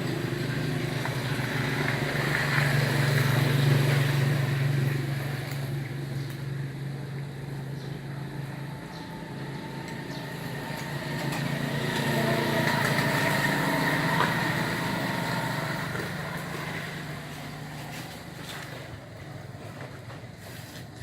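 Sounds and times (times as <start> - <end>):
vehicle engine passing by: 0.0 - 20.7.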